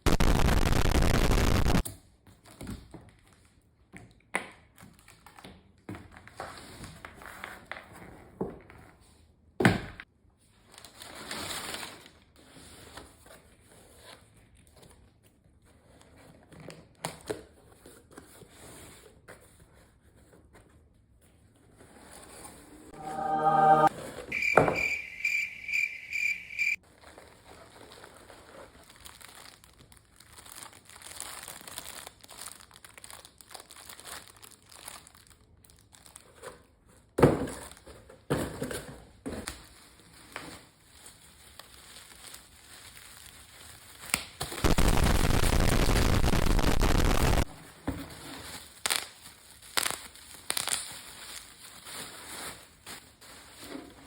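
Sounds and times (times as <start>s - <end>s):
brief pitched sound: 22.9s - 26.8s
packaging crinkling and rustling: 26.9s - 38.2s, 39.4s - 46.1s, 47.6s - 54.0s
loud steady rush of noise: 44.6s - 47.4s.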